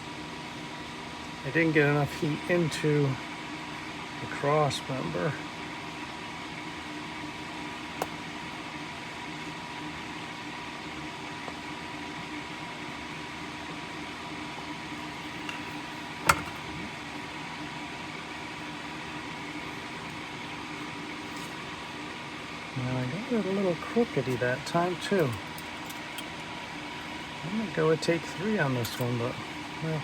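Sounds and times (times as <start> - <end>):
fan-like hum: 0.0 - 30.0.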